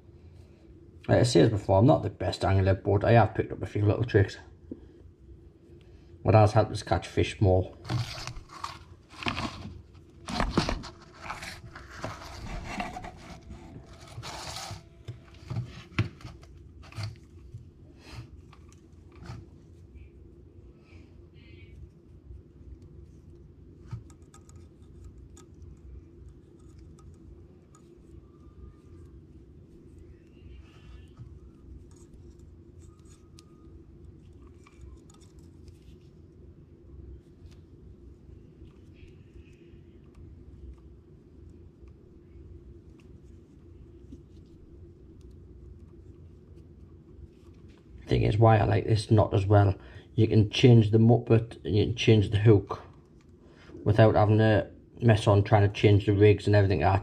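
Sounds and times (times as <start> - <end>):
low steady hum: 0.0 - 57.0
fishing line scraping and crinkling: 10.5 - 17.4
fishing line rustling and clicking: 22.7 - 36.4.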